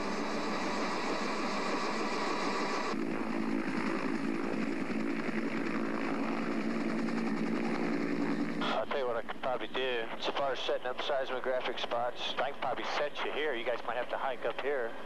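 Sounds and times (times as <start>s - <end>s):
aircraft engine drone: 0.0s - 15.0s.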